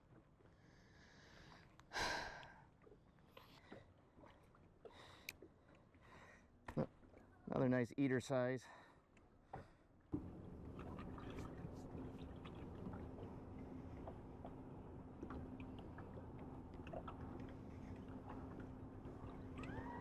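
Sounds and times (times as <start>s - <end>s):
water lapping against hull: 0.0s - 7.5s, 8.7s - 20.0s
boat motor humming: 10.2s - 20.0s.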